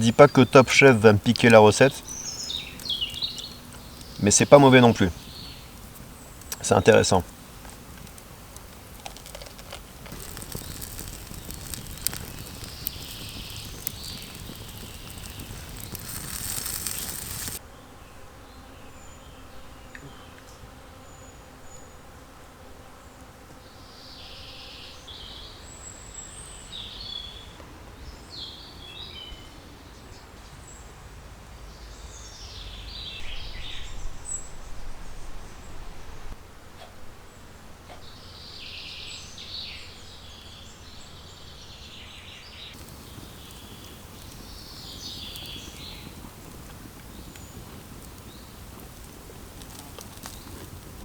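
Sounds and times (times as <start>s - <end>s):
bird chirps: 0.0s - 7.5s, 42.8s - 49.2s
steady hiss with clicks: 0.2s - 17.6s, 42.8s - 51.0s.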